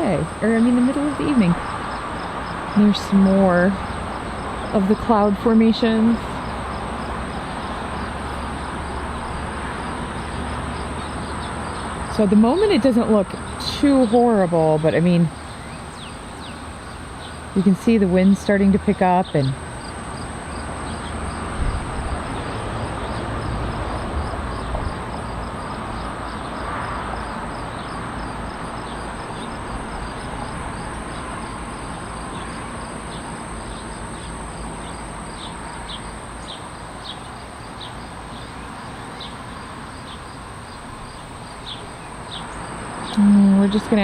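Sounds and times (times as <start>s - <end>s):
crickets trilling: 0.0s - 44.0s
wind buffeting microphone: 21.0s - 26.2s.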